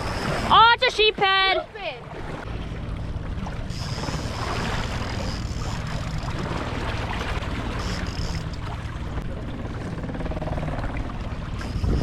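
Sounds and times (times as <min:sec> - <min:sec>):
boat motor humming: 0:00.0 - 0:12.0
water rushing: 0:00.0 - 0:12.0
wind noise: 0:11.6 - 0:12.0.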